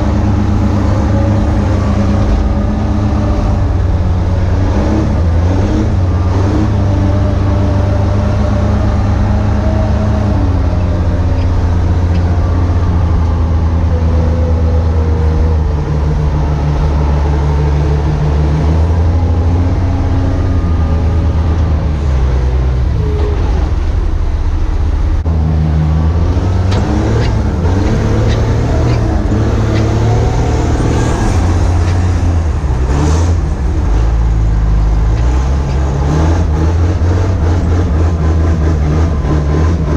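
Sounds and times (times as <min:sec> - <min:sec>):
heavy vehicle engine revving: 0:00.0 - 0:39.9.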